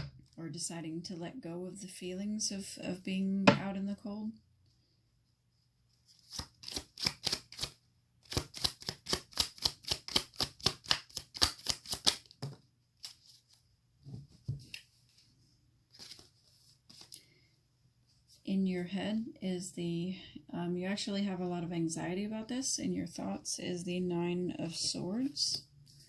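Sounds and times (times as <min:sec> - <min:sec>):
cards being shuffled: 0:06.0 - 0:13.6, 0:15.9 - 0:17.2.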